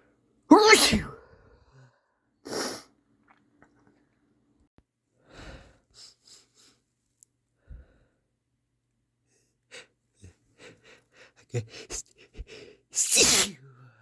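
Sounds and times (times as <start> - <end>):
person sneezing: 0.5 - 1.2, 2.5 - 2.8, 13.0 - 13.6
quick short sniffs: 2.5 - 2.9, 13.0 - 13.6
person breathing: 5.2 - 6.7.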